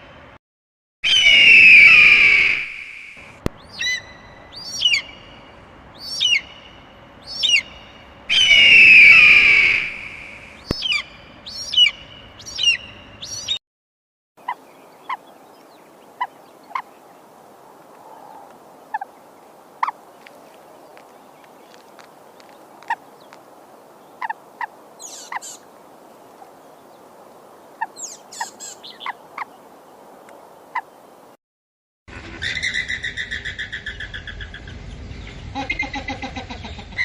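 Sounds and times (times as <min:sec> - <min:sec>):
large bird calling: 0:01.0 - 0:13.6, 0:14.4 - 0:31.0.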